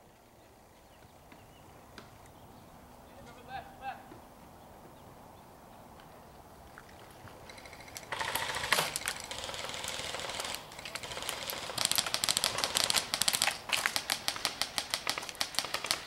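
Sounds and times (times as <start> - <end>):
airsoft guns firing: 8.0 - 16.0.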